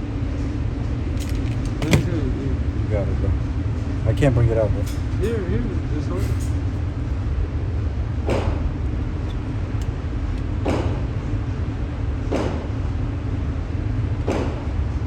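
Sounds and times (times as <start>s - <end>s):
steady low rumble: 0.0s - 15.0s
muffled gunshots: 8.2s - 8.8s, 10.6s - 11.2s, 12.3s - 12.8s, 14.3s - 14.8s.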